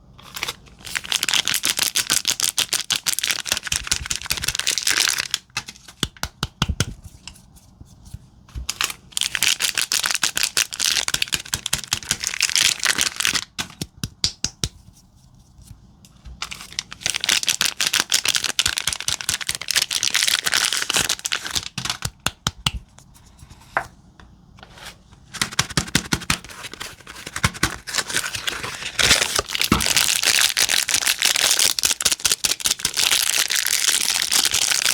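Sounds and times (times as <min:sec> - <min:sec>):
wrappers crinkling and tearing: 0:00.2 - 0:05.9, 0:08.7 - 0:13.6, 0:16.4 - 0:22.2, 0:26.6 - 0:34.9.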